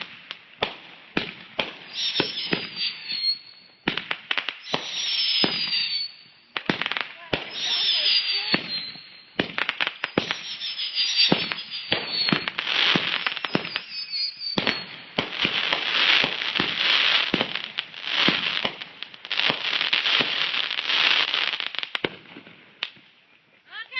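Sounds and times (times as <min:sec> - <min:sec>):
fireworks popping and banging: 0:00.0 - 0:23.1
fireworks crackling: 0:00.0 - 0:23.9
descending firework whistles: 0:01.6 - 0:17.3.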